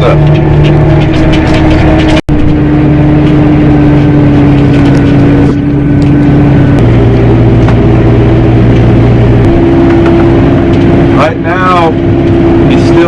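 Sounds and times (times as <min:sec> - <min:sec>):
combine harvester engine drone: 0:00.0 - 0:13.0.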